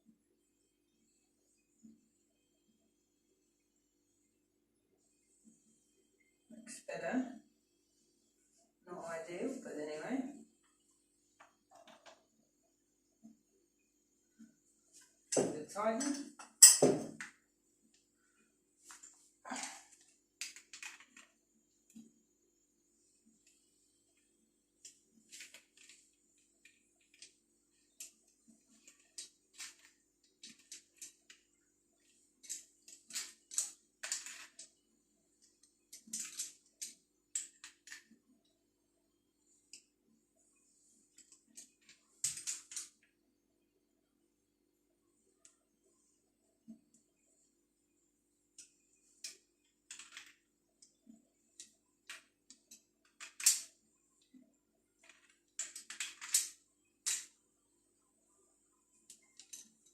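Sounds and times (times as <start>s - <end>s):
plastic fittings clicking and scraping: 23.2s - 34.8s, 35.4s - 38.3s, 48.6s - 54.3s, 55.0s - 57.3s
plastic pipe fittings clicking: 35.5s - 38.2s, 48.6s - 53.7s, 55.0s - 57.3s.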